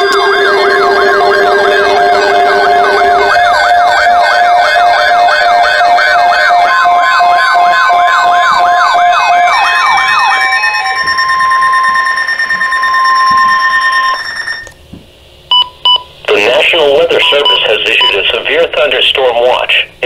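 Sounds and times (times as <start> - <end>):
electronic siren sweeping downward: 0.0 - 14.7
steady electronic alert tones: 0.0 - 14.8, 15.5 - 19.0.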